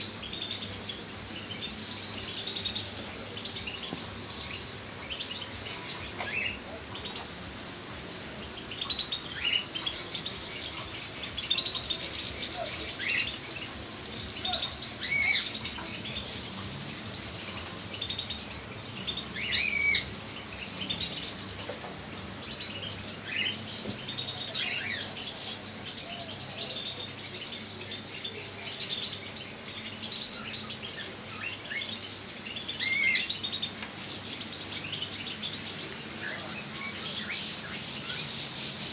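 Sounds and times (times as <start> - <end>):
cage birds chirping: 0.0 - 38.9.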